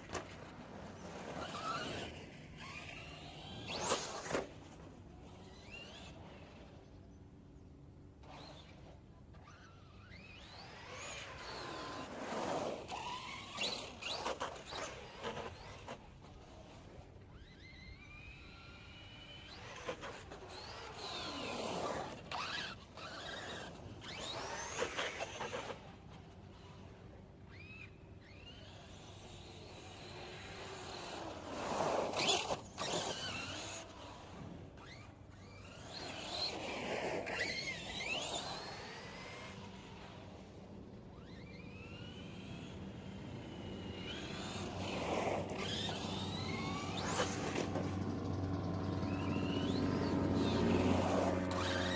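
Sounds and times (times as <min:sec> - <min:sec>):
electric motor whining: 0:41.1 - 0:51.9.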